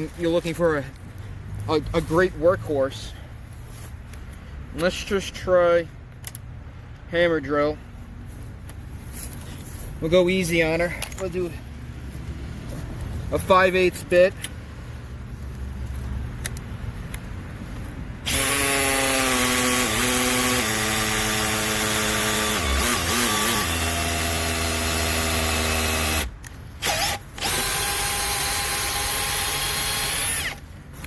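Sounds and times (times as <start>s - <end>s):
cordless hammer drill drilling: 18.2s - 30.6s.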